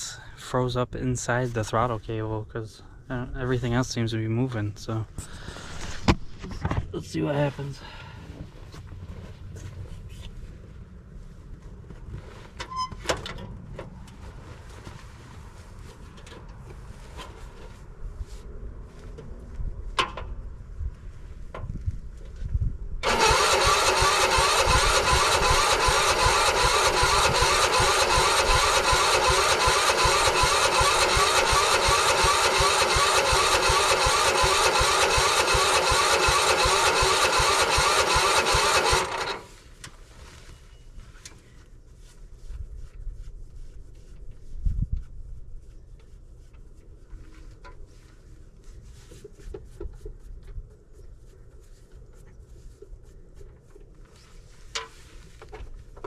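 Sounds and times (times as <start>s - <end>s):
starter cranking engine: 23.0s - 39.5s.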